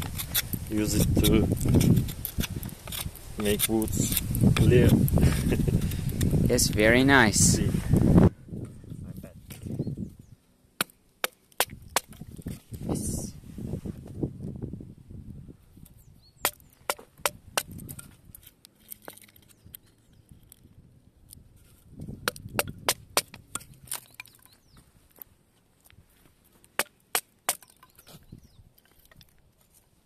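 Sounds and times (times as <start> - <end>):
knife chopping wood: 10.8 - 12.6, 16.4 - 17.9, 22.2 - 24.2, 26.8 - 28.1.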